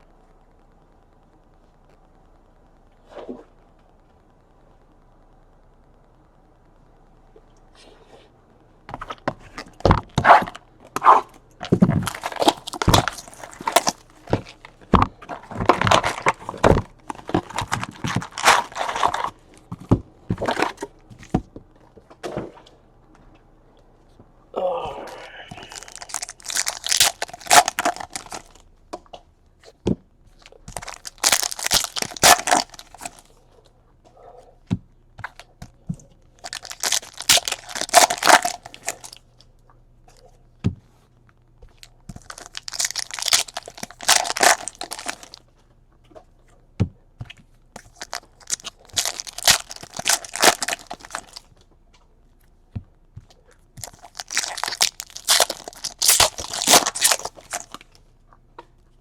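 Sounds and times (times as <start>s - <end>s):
foil wrappers tearing and crinkling: 9.0s - 19.6s, 25.5s - 28.6s, 30.4s - 33.3s, 36.4s - 39.2s, 41.8s - 45.4s, 47.8s - 51.5s, 53.8s - 58.0s.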